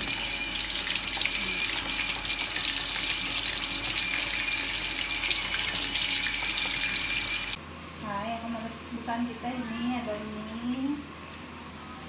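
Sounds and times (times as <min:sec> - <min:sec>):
food sizzling in hot oil: 0:00.0 - 0:07.6.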